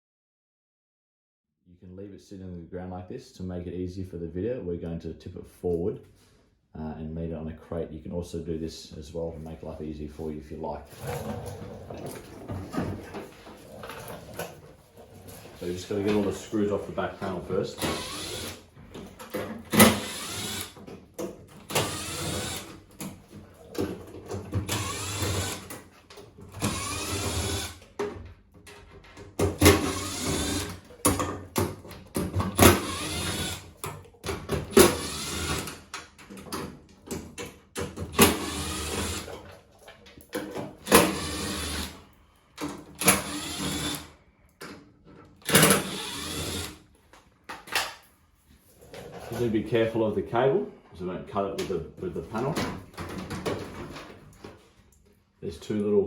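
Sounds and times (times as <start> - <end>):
cordless screwdriver whirring: 17.8 - 18.7, 19.8 - 20.8, 21.7 - 22.7, 24.7 - 25.7, 26.6 - 27.8, 29.6 - 30.8, 32.6 - 33.7, 34.7 - 35.8, 38.2 - 39.3, 40.9 - 42.0, 43.0 - 44.1, 45.5 - 46.8.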